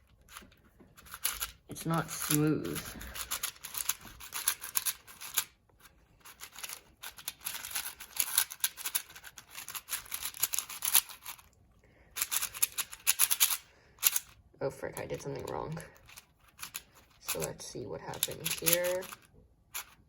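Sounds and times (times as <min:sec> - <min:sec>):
puzzle cube turning clicks: 0:00.2 - 0:05.5, 0:06.2 - 0:11.5, 0:12.2 - 0:14.4, 0:18.2 - 0:20.0.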